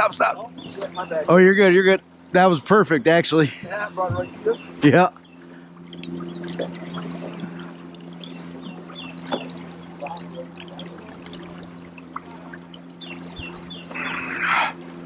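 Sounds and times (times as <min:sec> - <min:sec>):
steady low hum: 0:00.0 - 0:15.0
water trickling against a boat: 0:03.7 - 0:15.0.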